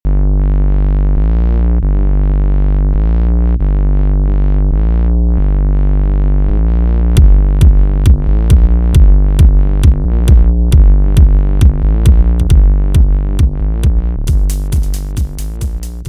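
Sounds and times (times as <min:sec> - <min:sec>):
steady low drone: 0:00.0 - 0:16.0
drum machine beats: 0:07.2 - 0:16.0.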